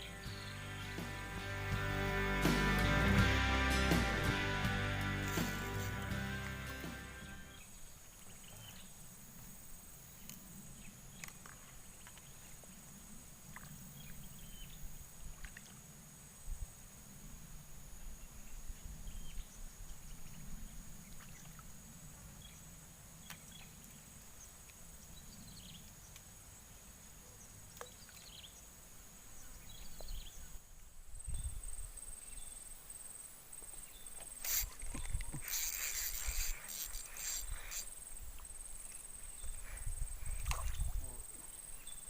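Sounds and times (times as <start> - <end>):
high-pitched insect drone: 34.4 - 38.1
wind rumble on microphone: 39.4 - 41.2.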